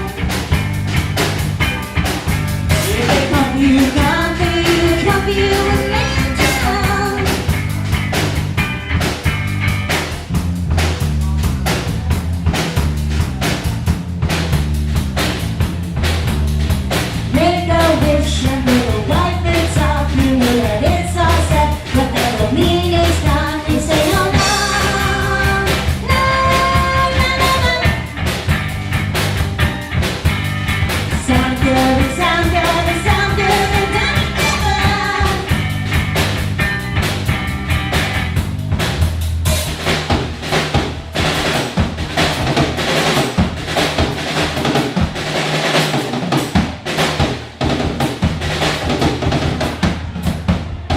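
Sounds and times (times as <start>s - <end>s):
electric guitar: 0.0s - 13.9s, 17.0s - 40.8s
bass guitar: 0.0s - 50.9s
drum kit: 0.0s - 50.9s
person singing: 2.7s - 7.4s, 17.3s - 28.1s, 31.2s - 35.5s.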